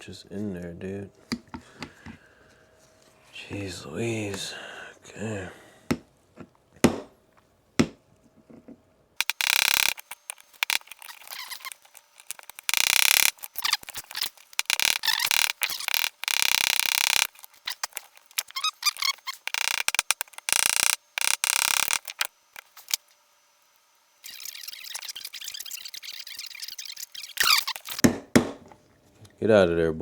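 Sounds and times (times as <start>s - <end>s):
metal squeaking and scraping: 9.2s - 23.0s, 24.2s - 28.0s
short metal squeals: 9.3s - 22.1s, 24.2s - 28.0s.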